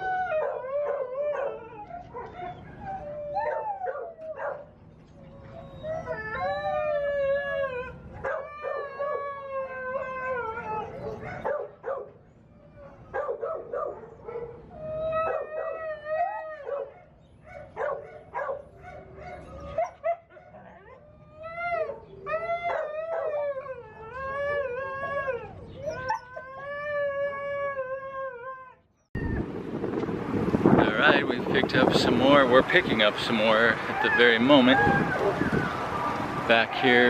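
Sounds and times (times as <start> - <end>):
dogs howling and whining: 0.0 - 28.9, 33.8 - 37.0
dog yips and barks: 12.9 - 14.5, 16.6 - 21.0.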